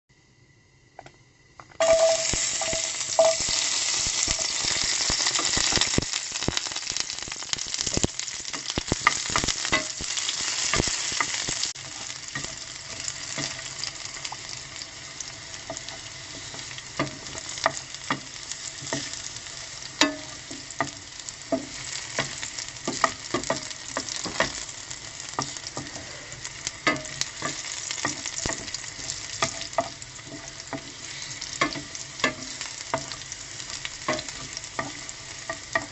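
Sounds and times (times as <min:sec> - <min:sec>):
garlic sizzling in a pan: 0:00.4 - 0:35.9.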